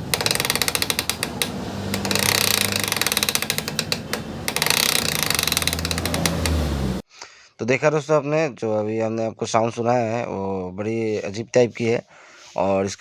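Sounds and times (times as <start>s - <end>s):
rapid clicking from motorcycle wheel: 0.0s - 6.7s
motorcycle engine hum: 0.0s - 7.0s.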